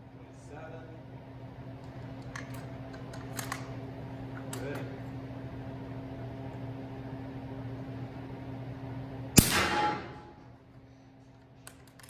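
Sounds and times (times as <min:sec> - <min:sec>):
steady low hum: 0:00.0 - 0:12.0
suppressed rifle shot: 0:09.4 - 0:10.3.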